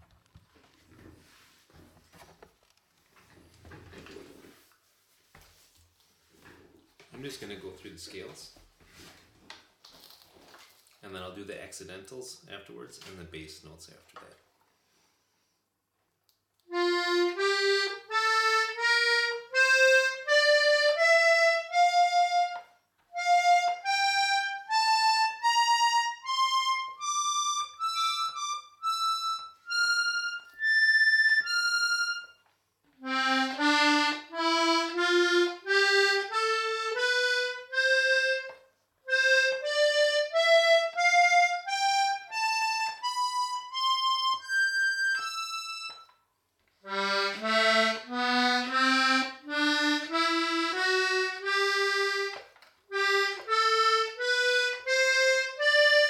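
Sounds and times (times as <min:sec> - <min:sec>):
accordion playing scales: 0:16.7 - 0:46.1, 0:46.8 - 0:56.0.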